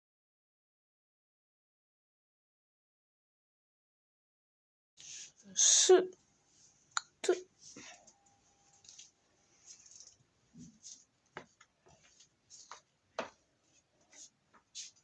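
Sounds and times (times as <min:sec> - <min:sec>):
faint rustling: 0:05.0 - 0:15.0.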